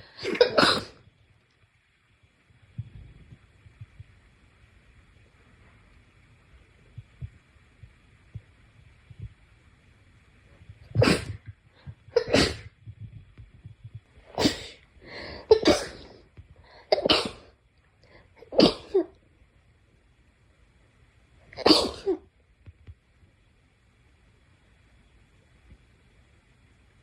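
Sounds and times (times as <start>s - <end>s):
person sneezing: 0.0s - 1.0s, 11.0s - 11.4s, 12.2s - 12.7s, 14.3s - 16.1s, 16.9s - 17.5s, 18.5s - 19.1s, 21.6s - 22.2s.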